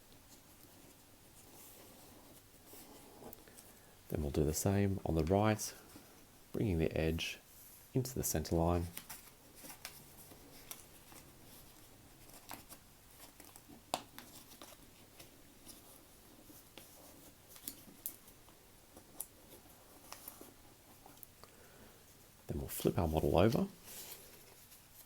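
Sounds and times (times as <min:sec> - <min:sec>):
paper rustling and crackling: 0:08.5 - 0:21.4, 0:22.6 - 0:25.0.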